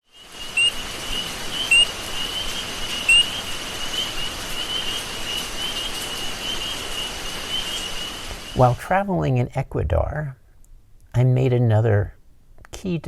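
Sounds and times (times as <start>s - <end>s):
rapid high-pitched chirping: 0.4s - 4.1s
bird giving sharp calls: 0.4s - 8.6s.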